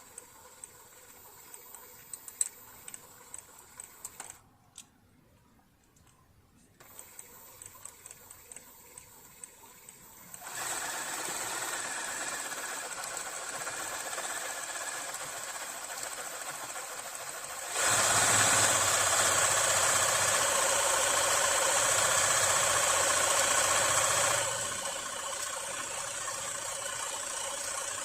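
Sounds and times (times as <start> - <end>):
sewing machine running: 10.3 - 28.0.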